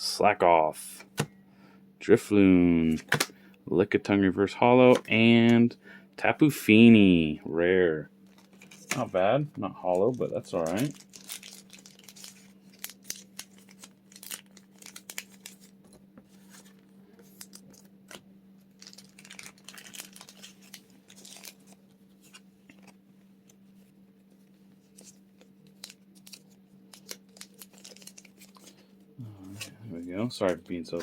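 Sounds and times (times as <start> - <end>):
foil wrapper crinkling and tearing: 8.2 - 9.2, 9.8 - 15.8, 16.4 - 17.9, 18.7 - 23.0, 24.9 - 28.8.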